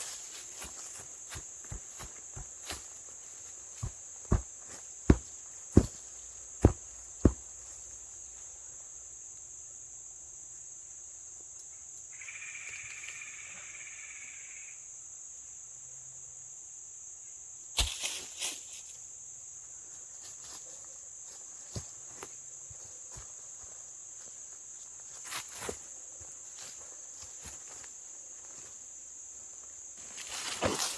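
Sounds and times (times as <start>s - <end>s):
crunching footsteps: 0.0s - 8.1s, 29.6s - 30.9s
insects droning: 0.0s - 30.9s.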